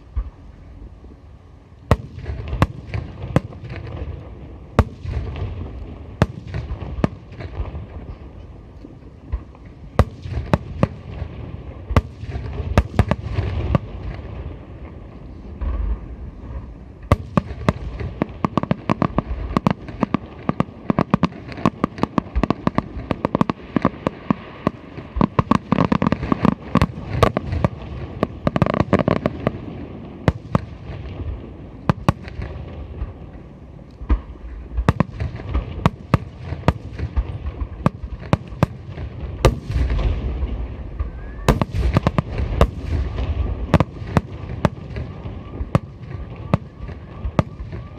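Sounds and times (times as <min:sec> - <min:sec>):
fireworks deep booms: 0:01.9 - 0:47.9
fireworks cracks and pops: 0:30.2 - 0:47.9.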